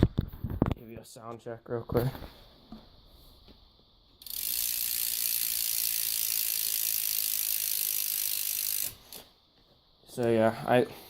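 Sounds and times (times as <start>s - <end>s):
bicycle hub ratcheting buzz: 4.2s - 9.4s.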